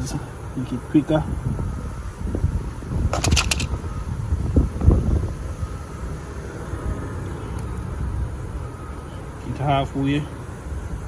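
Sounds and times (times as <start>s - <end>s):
wind on microphone: 1.2s - 8.7s
tool clicks: 3.1s - 3.7s.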